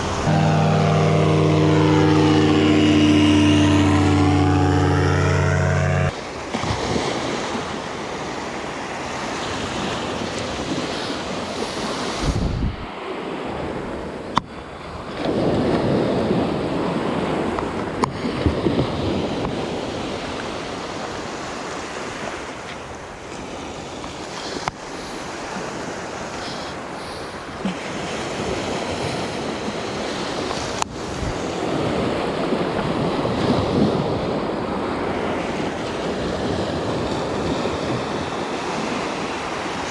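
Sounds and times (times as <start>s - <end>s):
wind on microphone: 0.0s - 7.2s, 9.5s - 21.0s, 27.6s - 39.9s
sea surf washing in: 0.0s - 39.9s.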